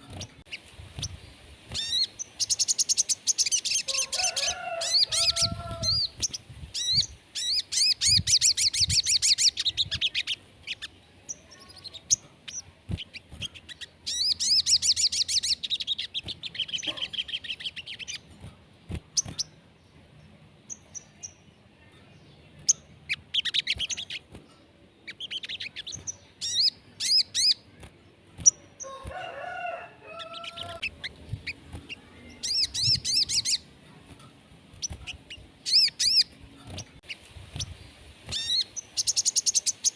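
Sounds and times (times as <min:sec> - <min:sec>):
songbird trilling: 0:01.8 - 0:18.3, 0:25.0 - 0:27.7, 0:30.0 - 0:33.7, 0:34.8 - 0:36.4.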